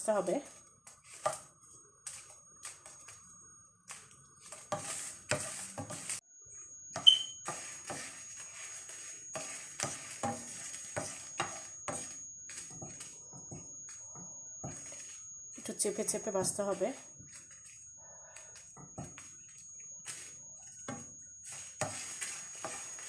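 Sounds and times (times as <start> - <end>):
spatula scraping a frying pan: 4.4 - 6.2, 7.0 - 13.7, 14.6 - 17.8, 18.4 - 23.0.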